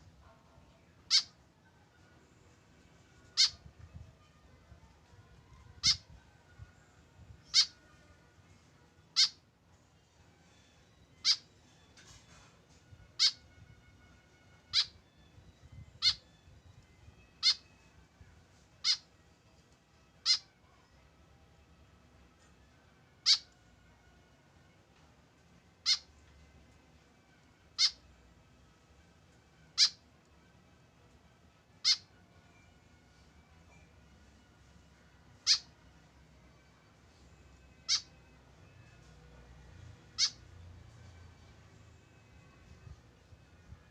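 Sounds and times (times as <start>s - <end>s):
bird giving harsh calls: 1.1s - 1.3s, 3.3s - 3.6s, 7.5s - 7.8s, 9.2s - 9.4s, 13.2s - 13.4s, 16.0s - 16.2s, 17.4s - 17.6s, 18.8s - 19.0s, 20.2s - 20.5s, 23.2s - 23.5s, 25.8s - 26.1s, 29.8s - 30.0s, 31.8s - 32.1s, 35.4s - 35.7s, 37.8s - 38.1s, 40.1s - 40.4s.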